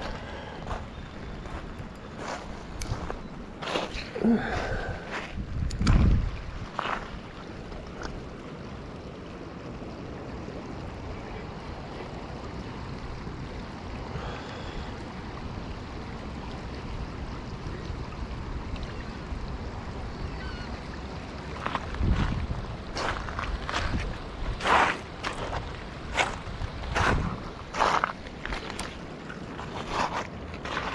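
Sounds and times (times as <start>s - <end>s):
river water flowing: 0.0s - 30.9s.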